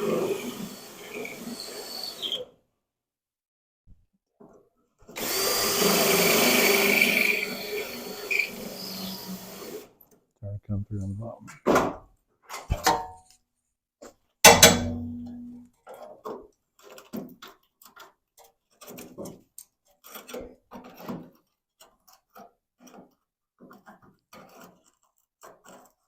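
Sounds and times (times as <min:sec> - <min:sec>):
loud metallic clang: 0:14.5 - 0:15.6
sharp knock: 0:14.5 - 0:15.6.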